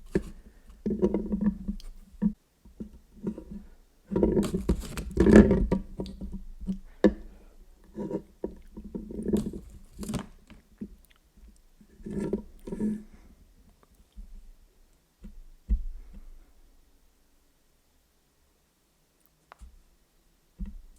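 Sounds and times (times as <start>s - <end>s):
close chewing and mouth sounds: 9.4s - 11.7s.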